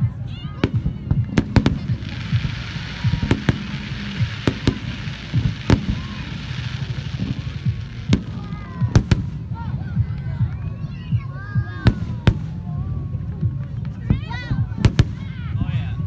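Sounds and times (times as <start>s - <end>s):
fireworks bangs and pops: 0.0s - 16.0s
steady hiss: 0.0s - 16.0s.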